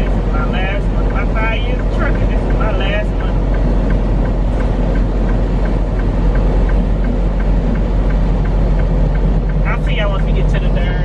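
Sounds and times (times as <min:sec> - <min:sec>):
truck engine and road noise: 0:00.0 - 0:11.0
faint light ticks: 0:01.8 - 0:10.3.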